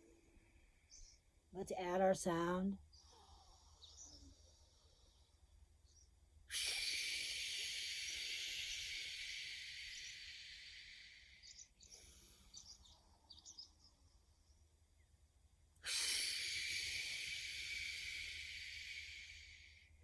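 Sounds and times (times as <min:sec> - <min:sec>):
faint breathing: 0:02.8 - 0:14.8, 0:15.8 - 0:20.0
long shushing exhale: 0:06.5 - 0:12.9, 0:15.8 - 0:20.0.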